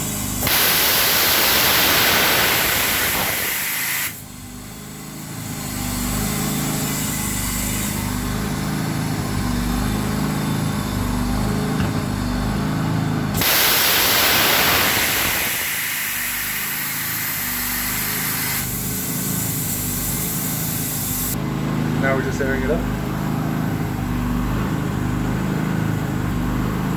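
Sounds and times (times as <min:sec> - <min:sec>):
compressed air hissing: 0:00.0 - 0:09.9, 0:13.3 - 0:21.4
motor running: 0:00.0 - 0:26.9.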